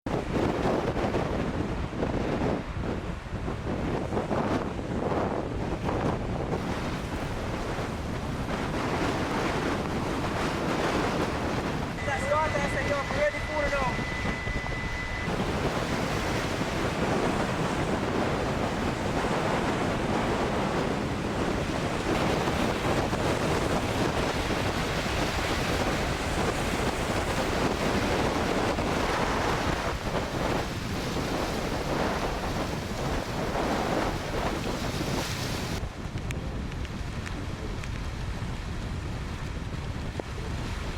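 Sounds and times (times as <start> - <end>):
strong wind buffeting microphone: 0.1 - 40.9
crashing surf: 6.5 - 36.2.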